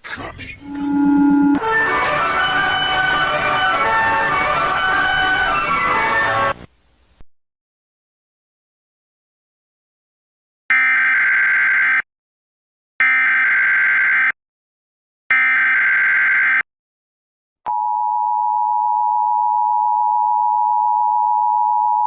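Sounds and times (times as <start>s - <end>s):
two-tone attention signal: 0.6s - 1.8s.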